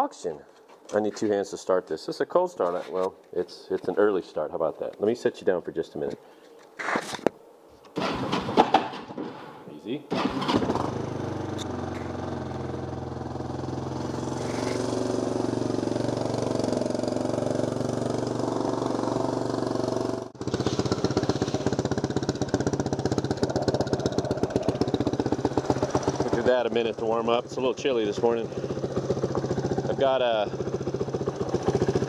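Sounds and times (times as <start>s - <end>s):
scooter engine running: 10.1s - 32.0s.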